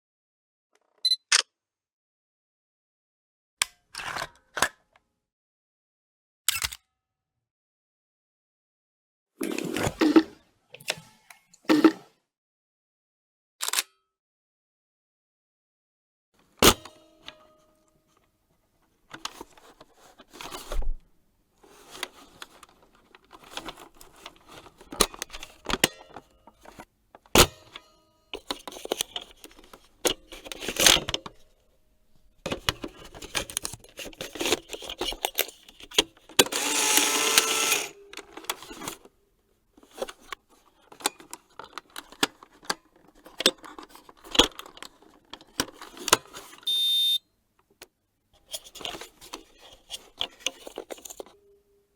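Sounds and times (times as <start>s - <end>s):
camera shutter clicks: 36.5s - 38.0s
whirring rattle: 36.5s - 38.0s.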